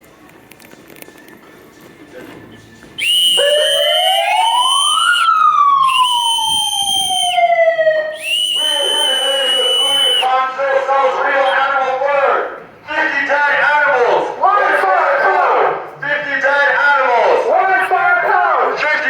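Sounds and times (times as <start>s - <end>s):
siren-like wail: 3.4s - 10.1s.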